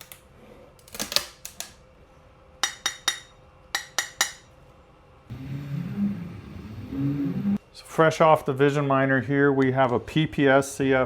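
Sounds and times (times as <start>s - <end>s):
low hum with wavering tones: 5.1s - 7.6s.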